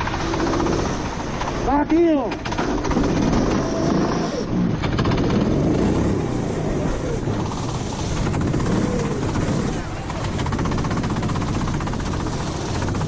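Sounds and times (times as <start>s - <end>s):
kart engine revving: 0.0s - 13.0s
wind rush: 0.0s - 13.0s
tyre spray on wet track: 5.0s - 13.0s.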